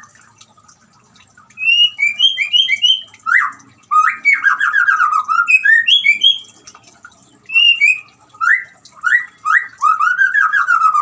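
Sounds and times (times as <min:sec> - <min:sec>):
bird singing whistled phrases: 0:01.6 - 0:06.6, 0:07.5 - 0:11.0.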